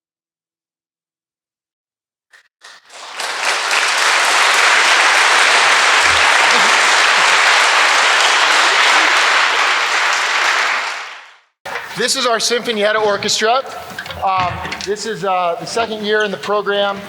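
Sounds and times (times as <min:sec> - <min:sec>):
audience applauding: 0:02.6 - 0:11.5.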